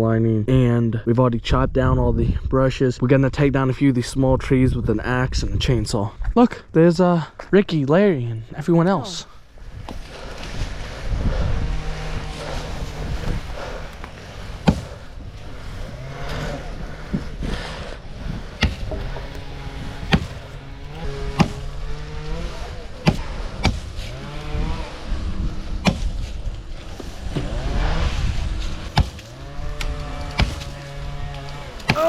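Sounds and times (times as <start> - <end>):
engine droning: 10.1 - 32.0
axe chopping wood: 14.0 - 15.1, 18.6 - 19.1, 20.0 - 20.4, 21.3 - 21.7, 23.0 - 24.0, 25.8 - 26.2, 28.9 - 29.4, 30.2 - 30.8, 31.8 - 32.0.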